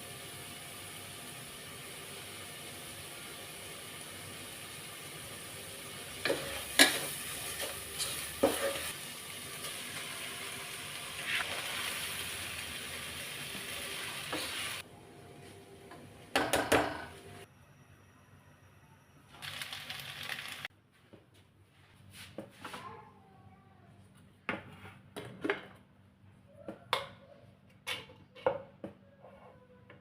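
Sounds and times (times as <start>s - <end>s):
food sizzling in a frying pan: 0.0s - 14.9s.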